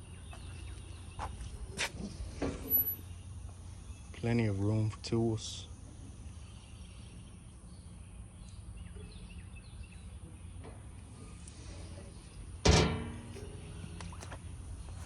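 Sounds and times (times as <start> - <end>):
metal toolbox lid clanging shut: 12.6 - 13.6.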